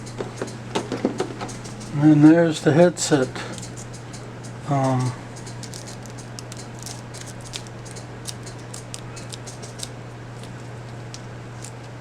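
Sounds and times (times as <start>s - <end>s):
steady low hum: 0.0s - 12.0s
plastic bag crinkling: 5.5s - 12.0s.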